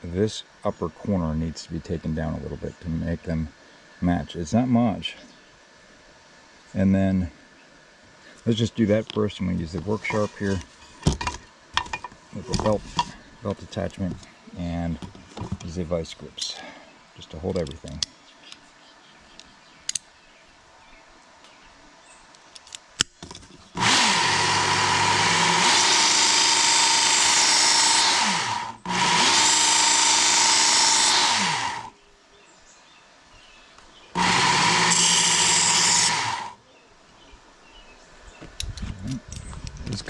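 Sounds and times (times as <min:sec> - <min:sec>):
belt grinder whining: 0:23.8 - 0:31.9, 0:34.2 - 0:36.6.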